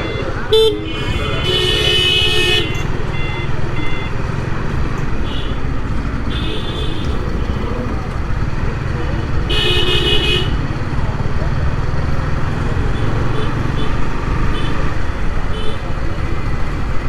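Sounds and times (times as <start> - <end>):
vehicle horns honking: 0.0 - 7.9, 9.3 - 10.9, 12.8 - 16.1
motorcycle rumbling: 0.0 - 17.0
wind: 0.0 - 17.0.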